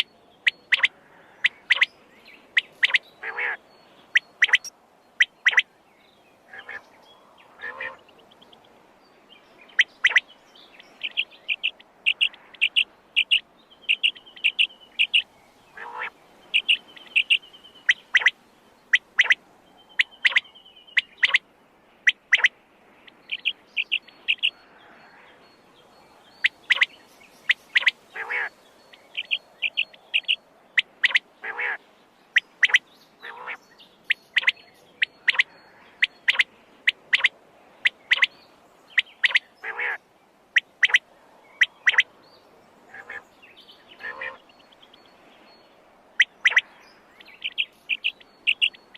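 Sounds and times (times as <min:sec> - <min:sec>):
quail calling: 0:00.0 - 0:01.9, 0:02.5 - 0:05.7, 0:06.5 - 0:06.9, 0:07.6 - 0:08.1, 0:09.7 - 0:10.2, 0:11.0 - 0:19.4, 0:20.0 - 0:21.4, 0:22.0 - 0:22.5, 0:23.1 - 0:24.6, 0:26.4 - 0:26.9, 0:27.5 - 0:38.3, 0:39.0 - 0:40.0, 0:40.6 - 0:41.0, 0:41.6 - 0:42.1, 0:42.9 - 0:43.2, 0:44.0 - 0:44.5, 0:46.2 - 0:48.9.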